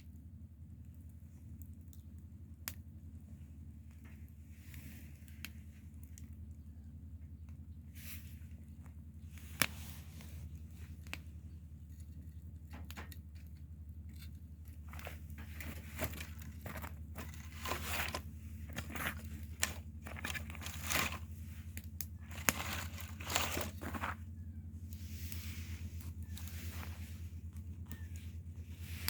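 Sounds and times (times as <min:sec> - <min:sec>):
low hum: 0:00.0 - 0:29.0
dry material crackling: 0:13.4 - 0:29.0.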